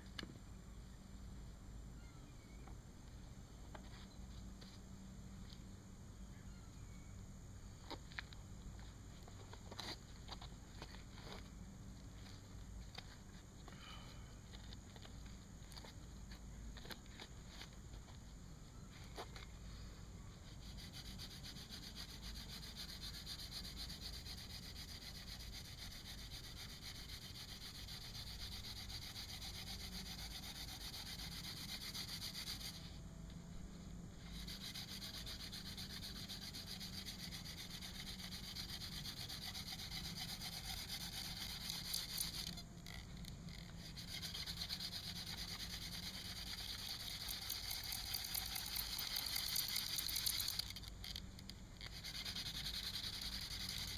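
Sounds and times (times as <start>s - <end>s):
hand drill spindle rasping on wood: 20.6s - 32.8s, 34.4s - 50.8s.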